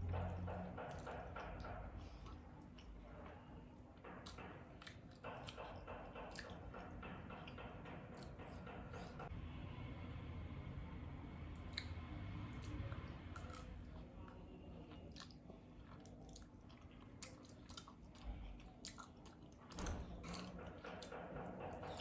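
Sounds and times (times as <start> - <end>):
person chewing noodles: 12.6 - 21.1.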